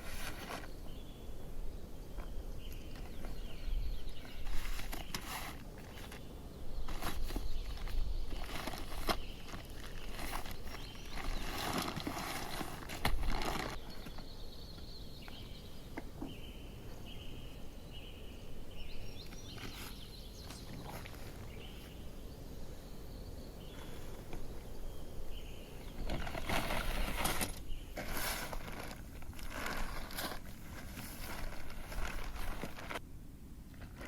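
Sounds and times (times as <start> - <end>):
rustling crinkling handling noises: 4.2 - 14.3, 26.0 - 33.0.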